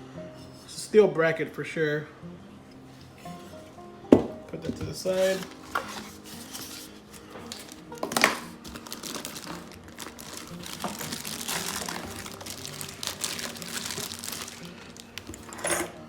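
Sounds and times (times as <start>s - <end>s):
packaging crinkling: 5.1s - 15.6s.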